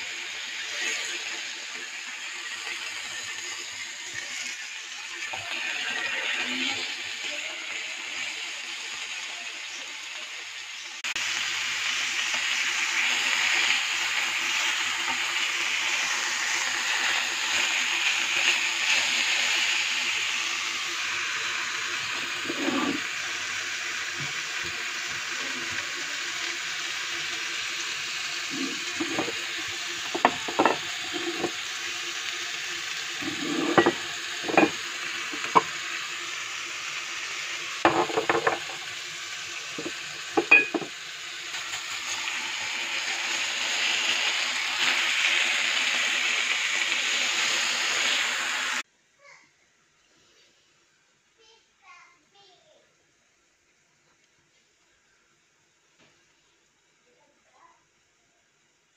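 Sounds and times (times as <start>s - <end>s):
meat sizzling in a frying pan: 0.0s - 48.8s
clinks and knocks: 28.6s - 29.4s, 30.1s - 31.5s, 33.3s - 34.8s, 35.4s - 35.7s, 37.9s - 38.8s, 39.8s - 40.9s.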